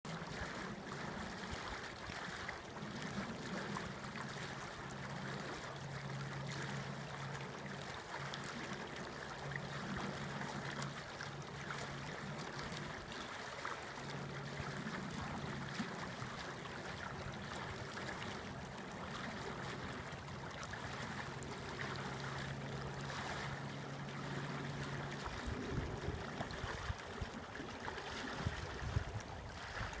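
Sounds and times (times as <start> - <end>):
brook babbling and trickling: 0.1 - 30.0
low steady hum: 0.1 - 30.0.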